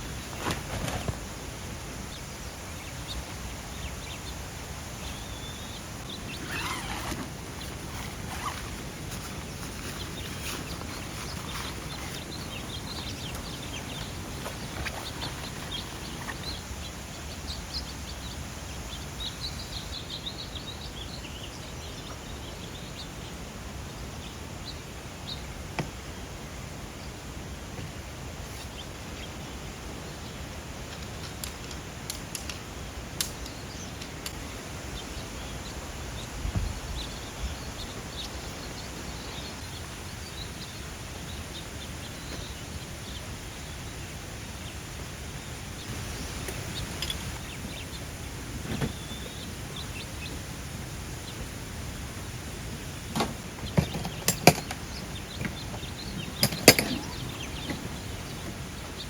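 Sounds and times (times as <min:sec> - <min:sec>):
outdoor background noise: 0:00.0 - 0:59.0
faint bird chirps: 0:05.0 - 0:23.4, 0:53.7 - 0:59.0.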